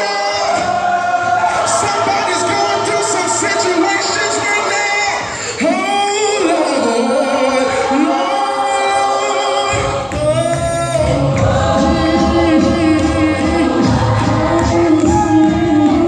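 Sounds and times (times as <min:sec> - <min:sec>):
gospel choir singing in harmony: 0:00.0 - 0:16.0
deep bass line: 0:10.1 - 0:16.0.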